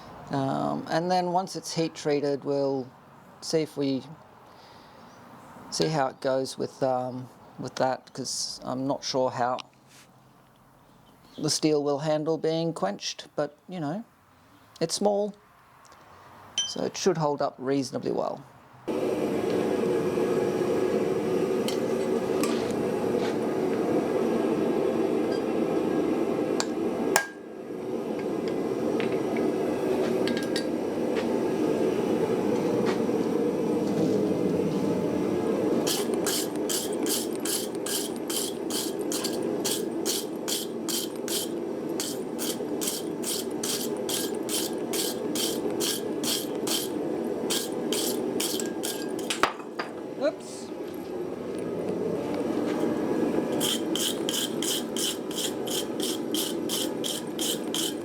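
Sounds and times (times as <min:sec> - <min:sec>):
hammer striking metal on anvil: 0:26.6 - 0:27.5, 0:35.9 - 0:49.7.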